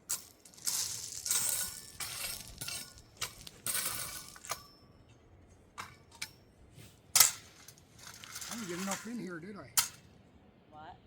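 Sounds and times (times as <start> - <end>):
scraping through loose stone: 0.1 - 4.5, 7.4 - 9.2
stones clattering: 0.1 - 4.5.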